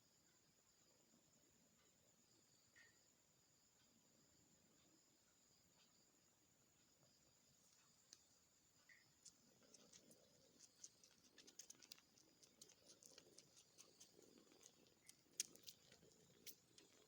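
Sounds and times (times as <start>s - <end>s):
cat purring: 8.8s - 17.0s
kittens suckling clicks: 9.2s - 17.0s.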